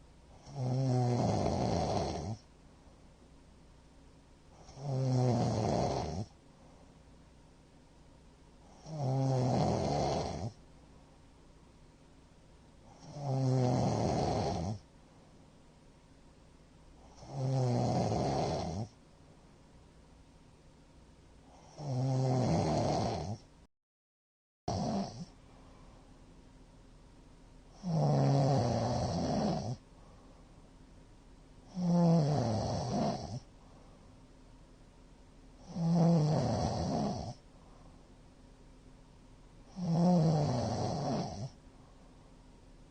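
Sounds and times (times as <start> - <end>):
quiet breathing: 0.0 - 3.3, 4.4 - 7.3, 12.6 - 15.8, 24.8 - 26.3, 27.6 - 31.0, 31.6 - 34.5, 35.5 - 38.5, 39.6 - 42.9
man snoring loudly: 0.4 - 2.4, 4.6 - 6.3, 8.7 - 10.6, 12.9 - 14.8, 17.0 - 19.0, 21.5 - 23.5, 24.7 - 25.3, 27.8 - 29.8, 31.7 - 33.5, 35.6 - 37.4, 39.7 - 41.6.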